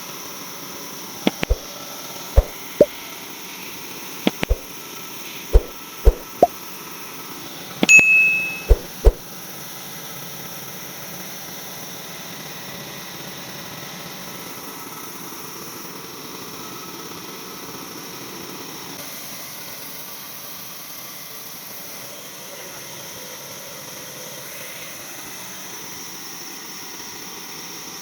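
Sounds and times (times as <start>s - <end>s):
metallic ring: 7.9s - 9.0s.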